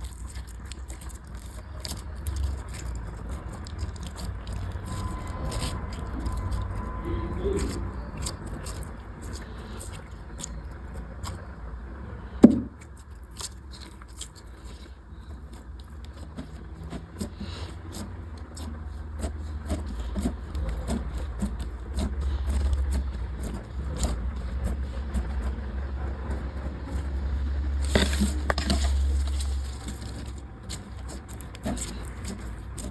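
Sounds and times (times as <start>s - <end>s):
slime squished and poked: 0.0s - 11.5s, 12.4s - 32.9s
loud thump: 12.4s - 12.7s.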